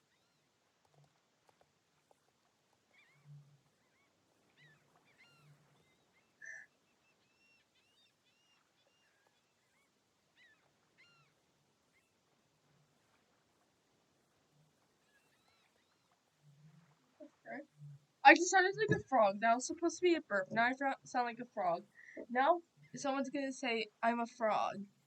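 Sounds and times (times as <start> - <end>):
faint high chirps: 3.0 - 12.1.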